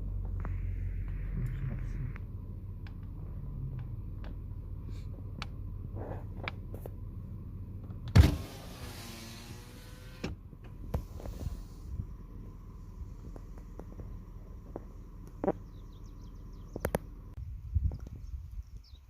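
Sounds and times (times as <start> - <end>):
car engine rumble: 0.0 - 19.0.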